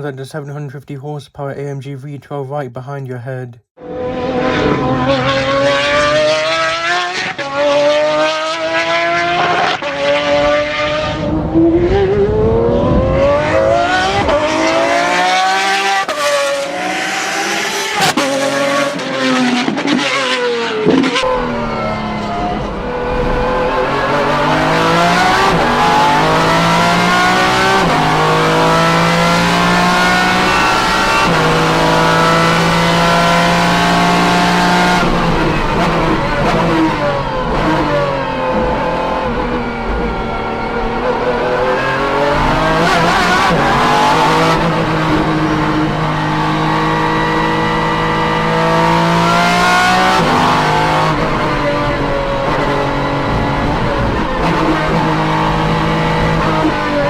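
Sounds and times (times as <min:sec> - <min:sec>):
race car engine shifting: 0:17.7 - 0:57.0.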